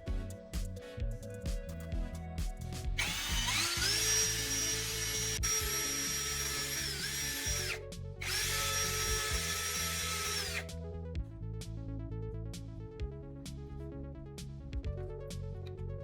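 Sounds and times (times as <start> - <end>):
background music with repeating notes: 0.0 - 16.0
electric power tool whining: 3.0 - 10.7.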